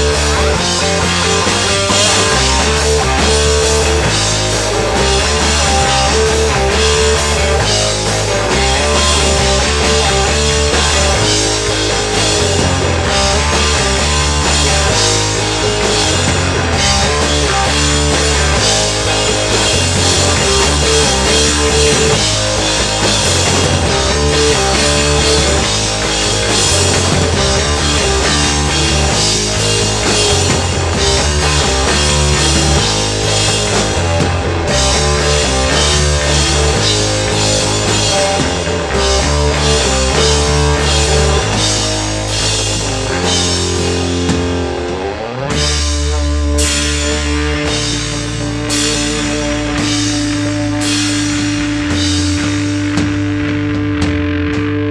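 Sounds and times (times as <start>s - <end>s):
bass line: 0.0s - 54.9s
drum kit: 0.0s - 54.9s
electric guitar: 0.0s - 54.9s.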